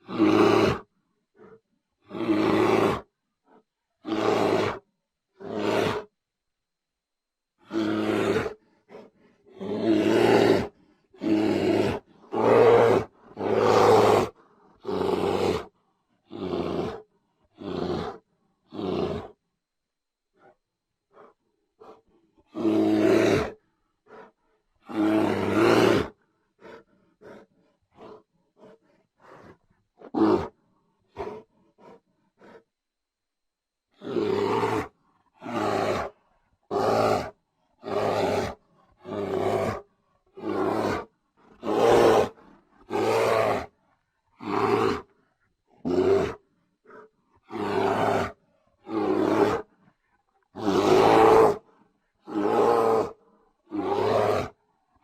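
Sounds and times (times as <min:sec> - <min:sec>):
bear roaring: 0:00.0 - 0:03.1, 0:04.0 - 0:04.8, 0:05.4 - 0:06.1, 0:07.6 - 0:15.7, 0:16.3 - 0:19.4, 0:21.1 - 0:32.6, 0:33.9 - 0:43.7, 0:44.4 - 0:45.1, 0:45.8 - 0:49.7, 0:50.5 - 0:54.6
bear grunting: 0:24.9 - 0:32.6.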